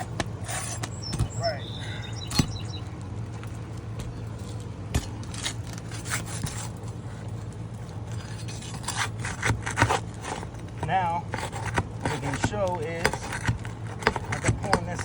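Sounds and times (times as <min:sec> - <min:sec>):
metal tool scraping shingle: 0:00.0 - 0:01.6, 0:04.0 - 0:07.0, 0:08.0 - 0:15.0.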